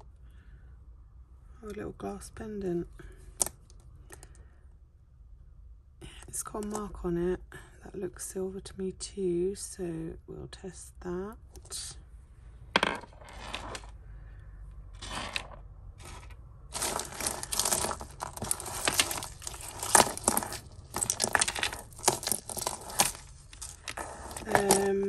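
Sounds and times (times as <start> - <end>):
plastic crinkling: 15.0 - 25.0.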